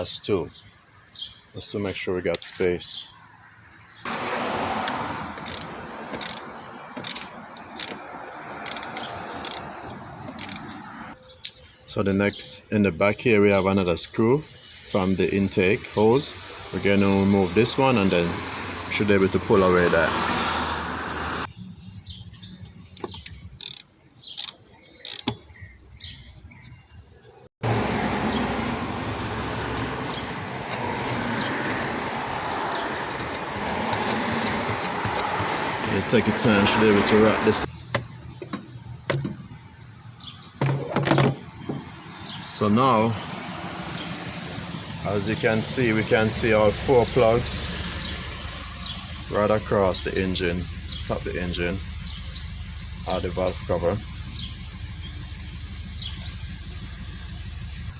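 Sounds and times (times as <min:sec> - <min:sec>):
ratchet wrench clicking: 0:05.4 - 0:08.0, 0:08.6 - 0:09.7, 0:10.4 - 0:10.7, 0:23.6 - 0:25.4
tool knocking against metal parts: 0:32.9 - 0:35.7.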